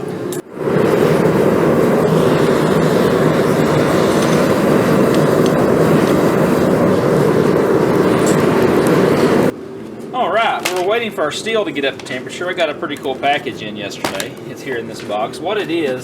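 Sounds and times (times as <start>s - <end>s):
forge rushing noise: 0.0s - 9.6s.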